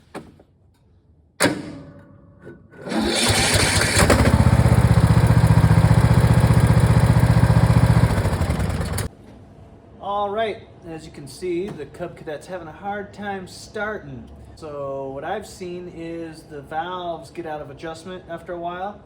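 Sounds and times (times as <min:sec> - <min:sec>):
engine cranking on starter: 0:02.8 - 0:09.1.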